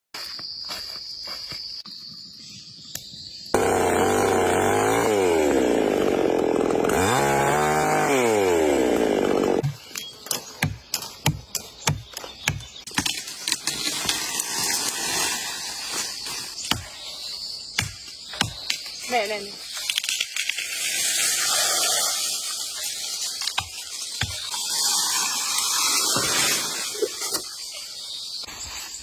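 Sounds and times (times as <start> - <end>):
small engine revving: 3.6 - 9.6.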